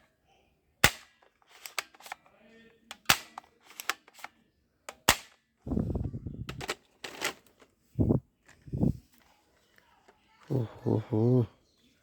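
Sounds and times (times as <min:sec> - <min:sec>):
toy gun shots: 0:00.8 - 0:02.2, 0:02.9 - 0:04.3, 0:04.9 - 0:05.4.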